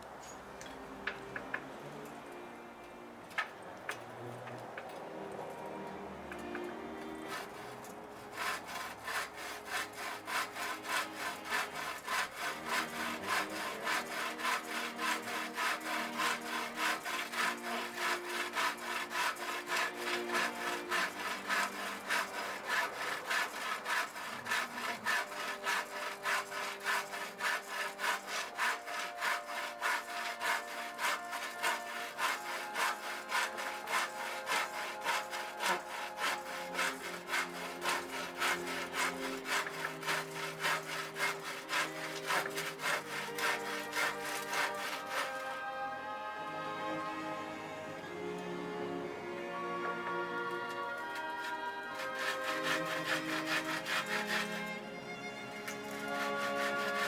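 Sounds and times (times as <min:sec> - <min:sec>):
saw cutting wood: 0:04.5 - 0:47.2, 0:49.5 - 0:57.0.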